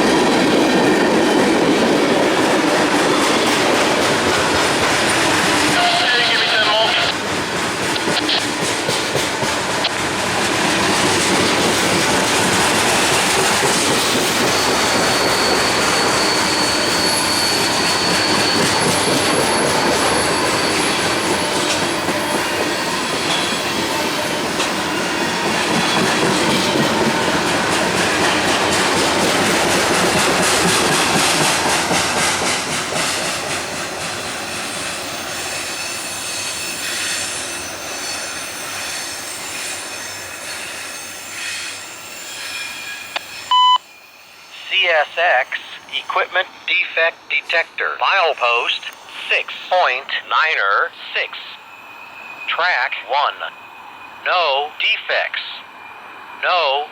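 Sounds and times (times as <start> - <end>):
high wheel squeal: 13.9 - 26.0, 34.4 - 44.6, 51.6 - 52.7.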